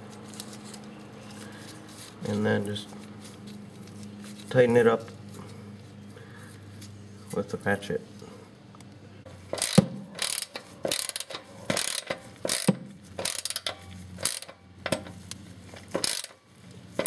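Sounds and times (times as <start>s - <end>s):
socket ratchet clicking: 9.6s - 15.0s, 16.0s - 16.4s.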